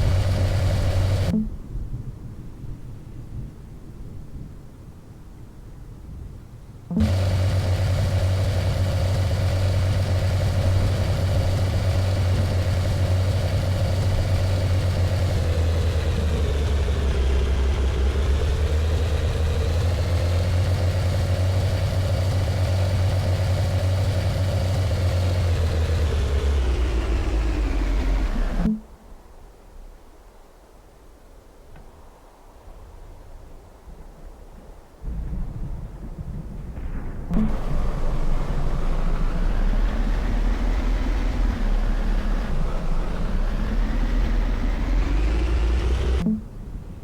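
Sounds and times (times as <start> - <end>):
vehicle engine humming: 0.0 - 1.5, 6.9 - 28.8, 37.4 - 46.8.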